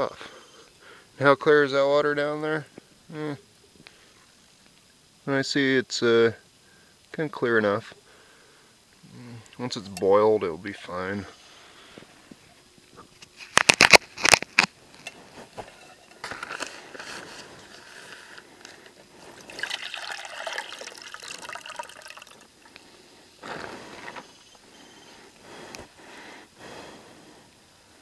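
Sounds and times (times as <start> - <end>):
water pouring and trickling: 19.2 - 22.8.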